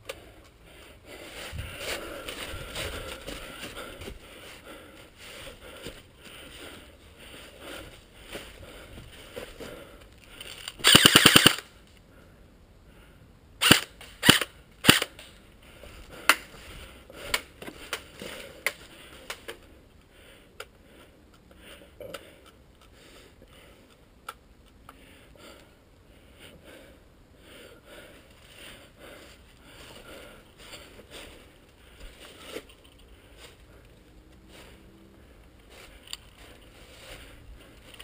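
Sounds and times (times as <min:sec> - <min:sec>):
airsoft guns firing: 0:10.8 - 0:11.7, 0:13.6 - 0:15.2.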